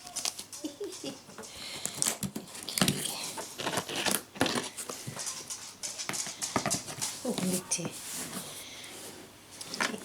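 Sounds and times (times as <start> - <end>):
packing tape peeling and tearing: 1.9 - 4.7.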